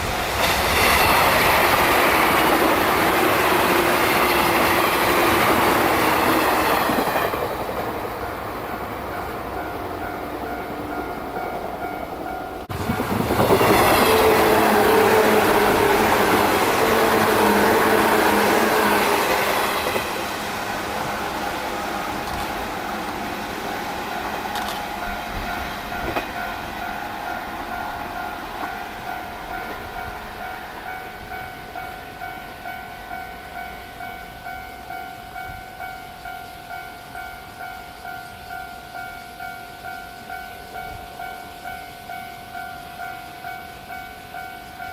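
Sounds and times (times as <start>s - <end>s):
train passing: 0.0s - 44.9s
level-crossing bell ringing: 8.2s - 17.6s.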